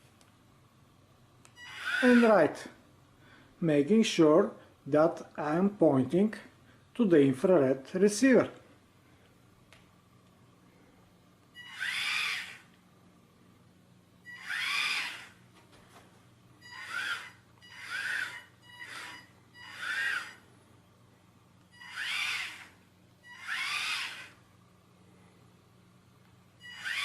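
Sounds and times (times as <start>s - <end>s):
small motors whining: 1.6s - 2.4s, 11.6s - 12.7s, 14.3s - 15.4s, 16.6s - 20.5s, 21.7s - 24.4s, 26.6s - 27.0s.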